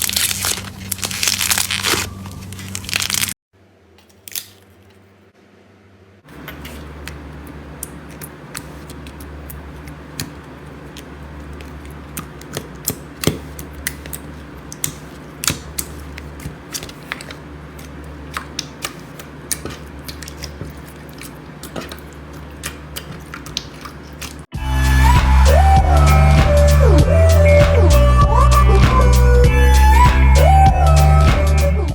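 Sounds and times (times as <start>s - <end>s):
slime crackling and popping: 0.0s - 3.4s, 7.8s - 24.5s.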